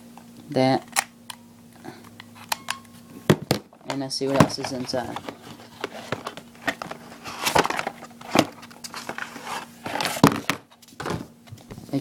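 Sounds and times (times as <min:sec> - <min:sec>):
packaging rustling and clicking: 0:03.5 - 0:10.7.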